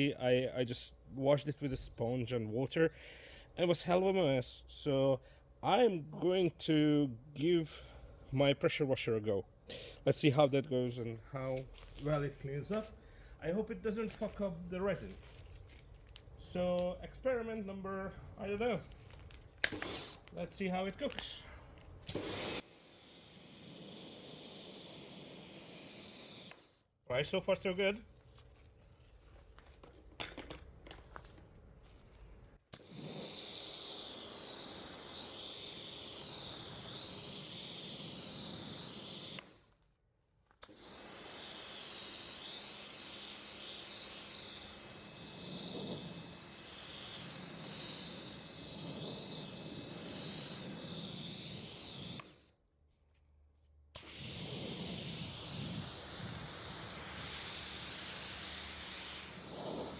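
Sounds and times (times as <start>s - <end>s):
pressure washer spraying water: 22.1s - 26.6s, 32.8s - 39.5s, 40.6s - 52.4s, 54.0s - 59.9s.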